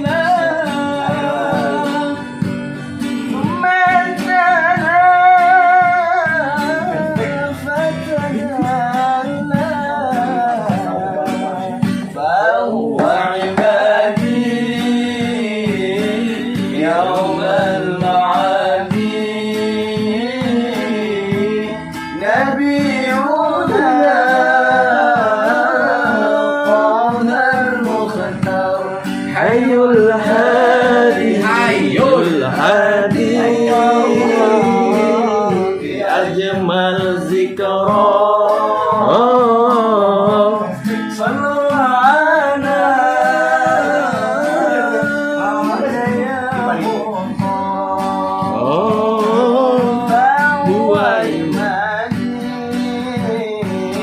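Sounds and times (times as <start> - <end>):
guitar: 0.0 - 54.0
man singing devotional melody: 0.0 - 54.0.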